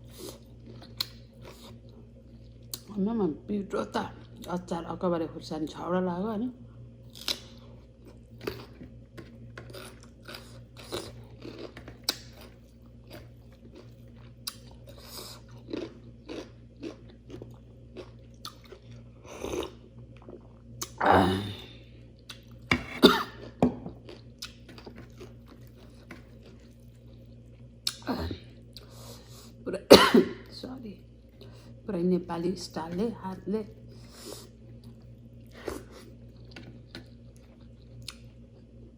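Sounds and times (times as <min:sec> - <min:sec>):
wet chewing and crunching: 0:00.0 - 0:02.9, 0:07.0 - 0:21.0, 0:22.2 - 0:29.4, 0:33.7 - 0:38.9.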